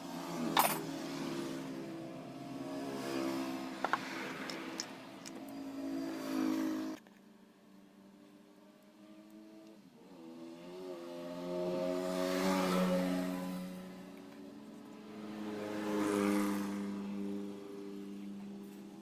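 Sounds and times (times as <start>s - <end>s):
motorcycle engine revving: 0.0s - 7.0s, 9.0s - 18.8s.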